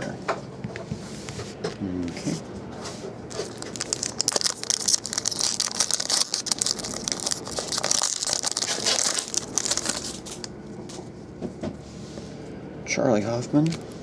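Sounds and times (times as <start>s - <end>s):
wrapper crinkling: 3.3s - 10.5s.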